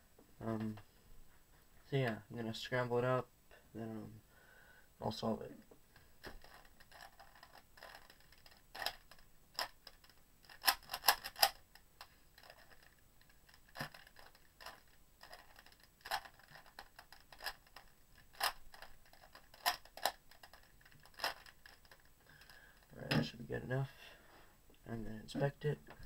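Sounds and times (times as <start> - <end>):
speed cube turning clicks: 6.2 - 23.0.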